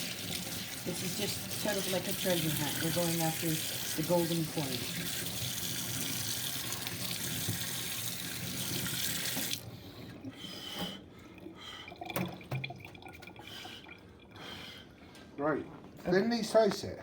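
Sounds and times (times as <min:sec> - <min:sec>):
tap water running: 0:00.0 - 0:14.6
water dripping: 0:11.3 - 0:14.4.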